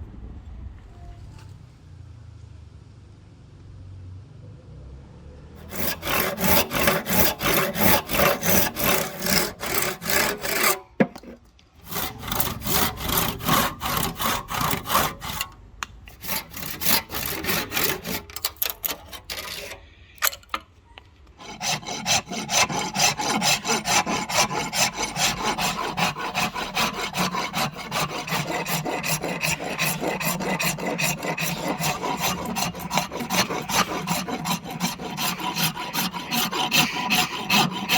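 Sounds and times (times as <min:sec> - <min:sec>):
hand saw on hardwood: 0:05.6 - 0:19.8, 0:21.4 - 0:37.9.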